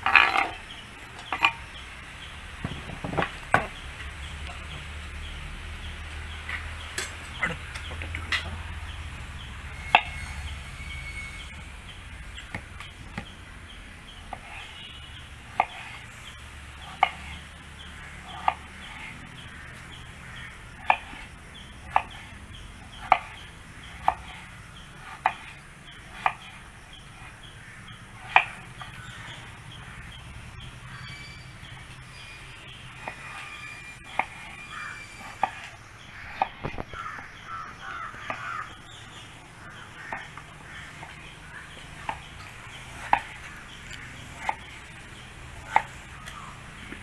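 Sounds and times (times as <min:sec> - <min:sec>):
knife chopping vegetables on board: 0:23.0 - 0:25.5.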